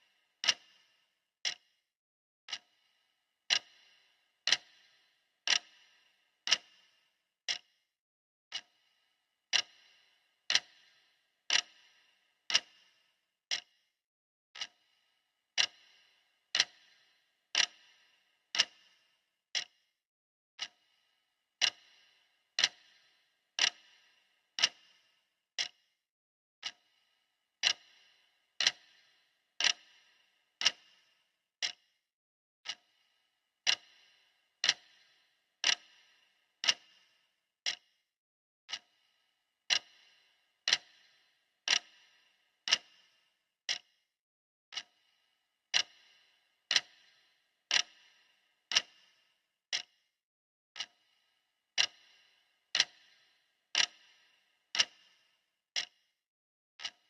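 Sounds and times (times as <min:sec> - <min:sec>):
clock ticking: 0:00.0 - 0:01.6, 0:02.5 - 0:02.9, 0:03.5 - 0:06.9, 0:07.5 - 0:07.7, 0:08.5 - 0:08.9, 0:09.5 - 0:13.7, 0:14.6 - 0:19.8, 0:20.6 - 0:20.9, 0:21.6 - 0:25.8, 0:26.6 - 0:27.0, 0:27.6 - 0:31.9, 0:32.6 - 0:33.0, 0:33.6 - 0:38.0, 0:38.7 - 0:39.1, 0:39.7 - 0:44.0, 0:44.7 - 0:50.0, 0:50.8 - 0:51.2, 0:51.8 - 0:56.0, 0:56.8 - 0:57.0.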